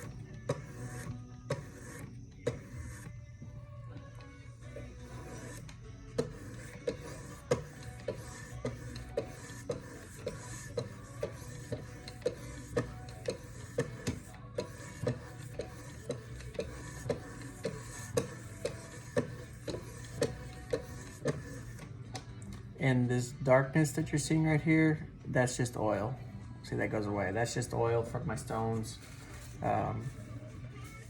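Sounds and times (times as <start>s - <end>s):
sharpening stones stroking knife blade: 6.2s - 21.8s.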